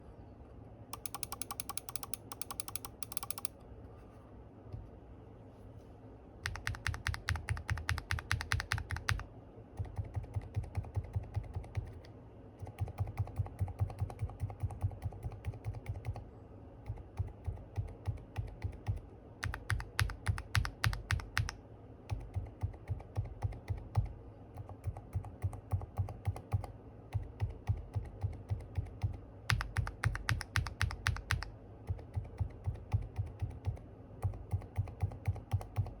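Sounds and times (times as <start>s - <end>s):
mechanical keyboard key presses: 1.0s - 3.6s, 6.4s - 9.2s, 16.9s - 36.0s.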